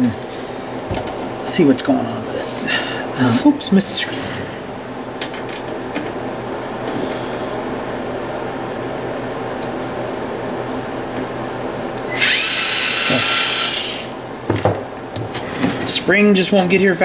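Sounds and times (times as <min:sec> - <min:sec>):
steady hum: 0:00.0 - 0:15.2
cordless drill whirring: 0:12.0 - 0:14.2.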